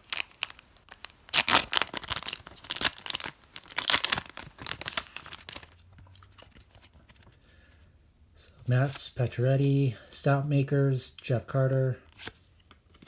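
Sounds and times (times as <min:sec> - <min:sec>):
card pack wrapper tearing and crinkling: 0:00.0 - 0:07.2, 0:12.0 - 0:13.0.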